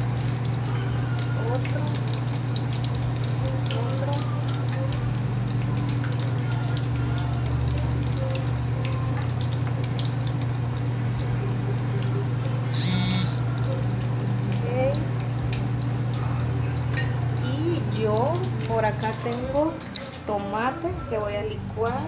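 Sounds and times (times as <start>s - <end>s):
food crackling and sizzling: 0.0s - 22.0s
short electronic beep: 12.8s - 13.5s.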